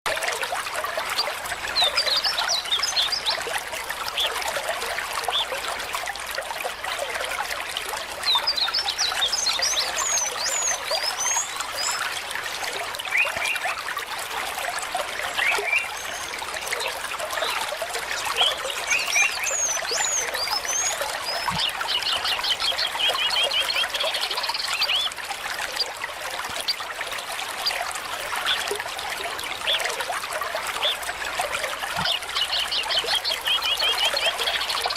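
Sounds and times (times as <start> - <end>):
water trickling: 0.1 - 34.9
small birds chirping: 8.2 - 12.1, 15.3 - 16.6, 17.4 - 26.8, 31.8 - 34.9.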